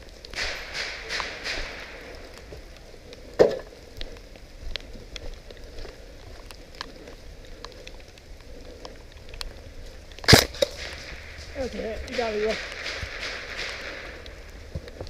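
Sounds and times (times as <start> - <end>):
faint crackling hiss: 0.0 - 15.0
light clicks and ticks: 1.1 - 15.0.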